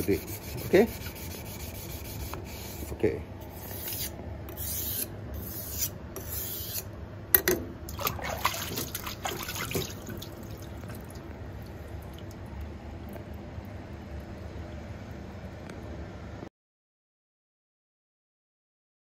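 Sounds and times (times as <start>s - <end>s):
knife scraping on whetstone: 0.0s - 6.9s.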